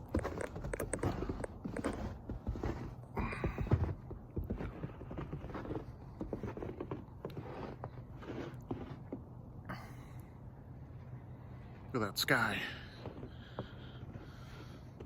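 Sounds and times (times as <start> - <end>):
footsteps in snow: 0.0 - 9.2.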